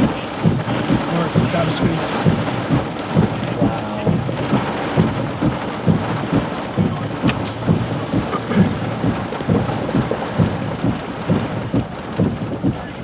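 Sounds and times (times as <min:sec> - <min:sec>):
heavy rain: 0:00.0 - 0:13.0
low thuds: 0:00.0 - 0:13.0
gusting wind: 0:04.5 - 0:13.0.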